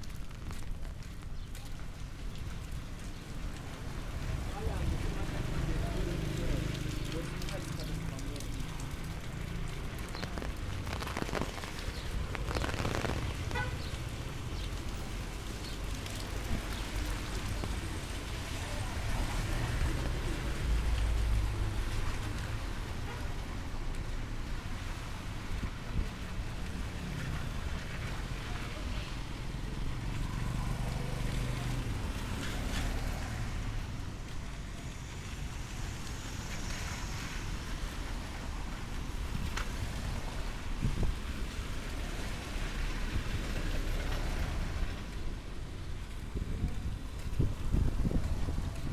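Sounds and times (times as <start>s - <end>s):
vehicle engine hum: 0.0s - 23.1s
low street rumble: 0.0s - 48.9s
rain pattering: 0.0s - 48.9s
low constant rumble: 7.2s - 21.8s
wind buffeting microphone: 39.0s - 42.0s, 46.1s - 48.9s.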